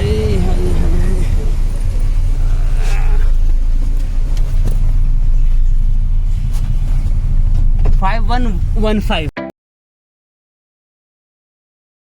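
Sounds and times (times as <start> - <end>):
car engine and road noise: 0.0 - 9.4.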